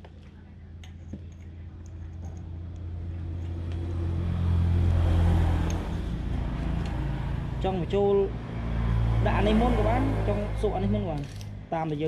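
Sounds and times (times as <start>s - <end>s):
motor vehicle engine passing: 3.0s - 11.6s.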